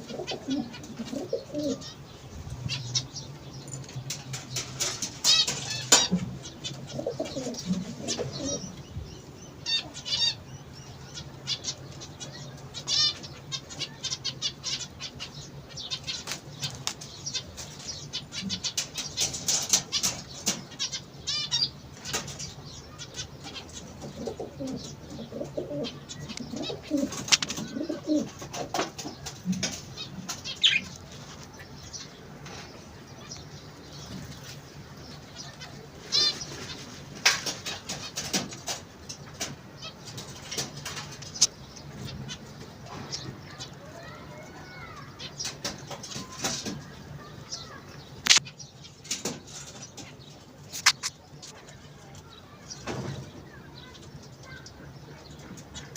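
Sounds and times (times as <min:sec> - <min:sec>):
pigeons cooing: 0:00.0 - 0:32.7, 0:33.6 - 0:48.4
birds calling: 0:00.0 - 0:55.9
sharp clicks: 0:48.2 - 0:48.5.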